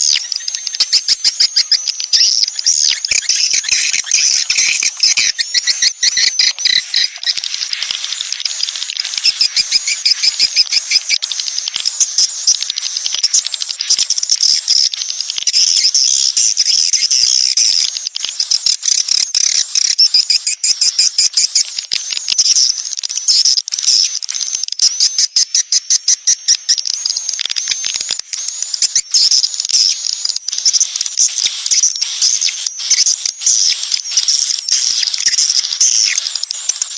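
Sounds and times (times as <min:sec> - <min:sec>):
fast clicking: 0:00.0 - 0:25.0
swiftlets chirping and twittering: 0:00.0 - 0:36.9.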